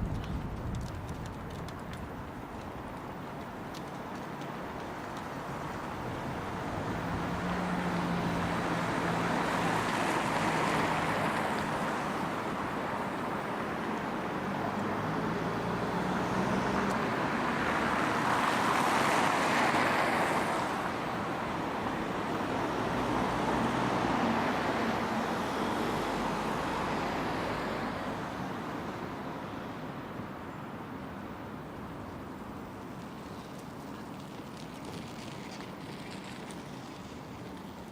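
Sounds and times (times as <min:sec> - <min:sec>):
low engine hum: 0:00.0 - 0:12.8
vehicles passing: 0:00.0 - 0:37.9.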